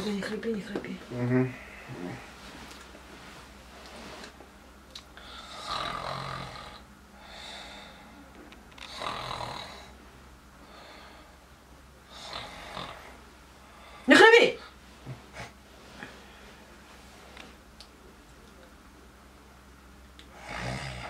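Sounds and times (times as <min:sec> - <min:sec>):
person snoring: 0:05.2 - 0:08.0, 0:08.9 - 0:10.0, 0:12.1 - 0:13.2, 0:20.3 - 0:21.0.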